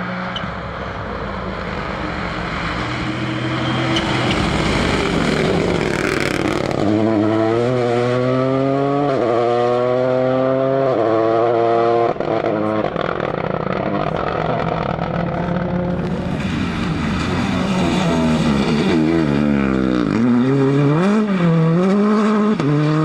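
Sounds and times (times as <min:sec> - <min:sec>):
car engine at full throttle: 0:00.0 - 0:23.0
tyre noise: 0:01.4 - 0:07.4.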